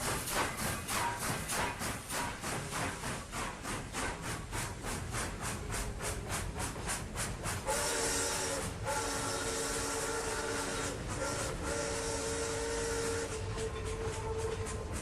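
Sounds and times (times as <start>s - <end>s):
hiss of steam: 0.0s - 15.0s
steam locomotive chuffing: 0.0s - 15.0s
steam whistle blast: 7.7s - 14.8s.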